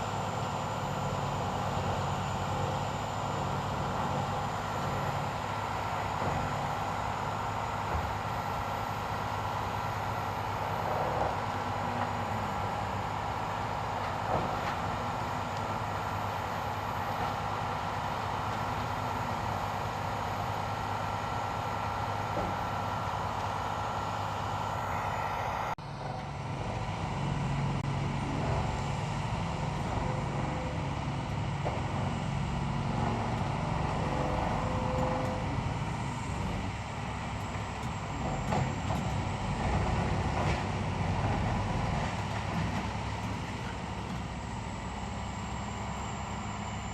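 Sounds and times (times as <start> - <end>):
metal-working machine running: 0.0 - 25.2, 25.9 - 46.9
lower-pitched machine running: 0.0 - 46.9.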